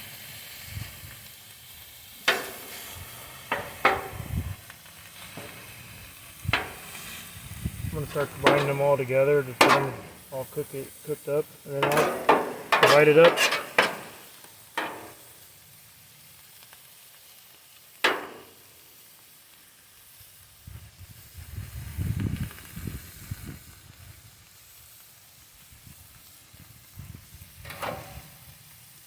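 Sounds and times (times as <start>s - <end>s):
food sizzling on a griddle: 0.0s - 29.0s
spatula clacking on griddle: 2.2s - 4.4s, 5.1s - 7.2s, 8.0s - 15.4s, 18.0s - 18.9s, 27.6s - 28.7s.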